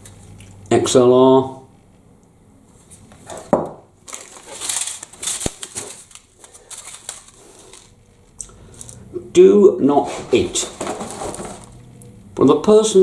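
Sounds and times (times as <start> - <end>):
packaging rustling and crinkling: 4.0 - 9.0, 10.1 - 12.1.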